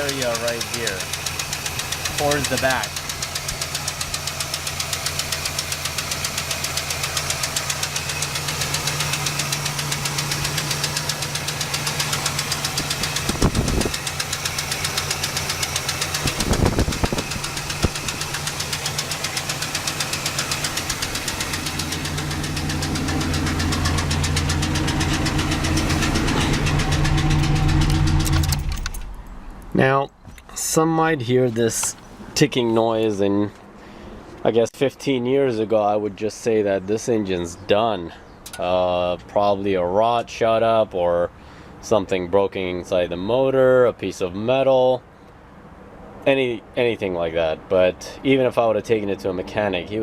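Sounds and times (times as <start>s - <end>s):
rapid engine ticking: 0.0s - 29.1s
engine idling: 0.0s - 29.3s.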